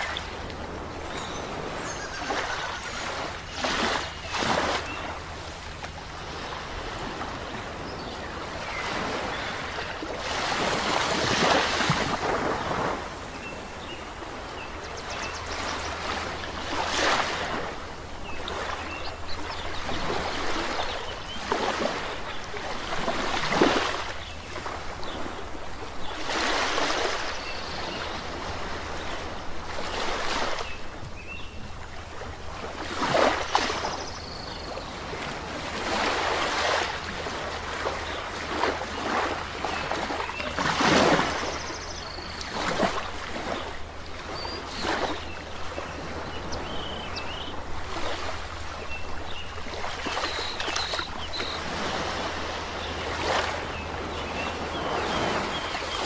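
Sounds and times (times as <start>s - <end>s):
sea waves breaking on shore: 0.0s - 56.0s
faint bird chirps: 48.9s - 51.7s.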